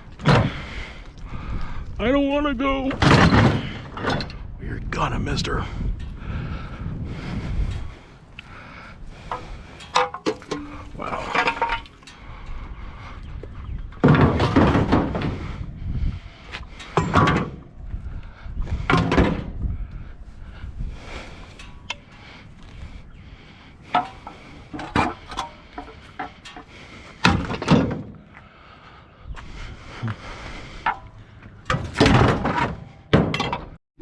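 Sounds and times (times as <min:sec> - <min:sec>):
scrap metal knocks and clanks: 0:02.9 - 0:04.5, 0:09.2 - 0:12.6, 0:14.0 - 0:15.7, 0:16.6 - 0:17.7, 0:18.8 - 0:19.6, 0:23.8 - 0:28.4, 0:30.1 - 0:33.8.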